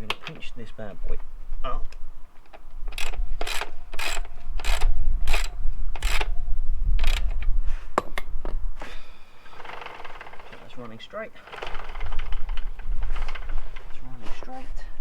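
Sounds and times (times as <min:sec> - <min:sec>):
socket ratchet clicking: 0:02.5 - 0:06.3, 0:07.0 - 0:07.4.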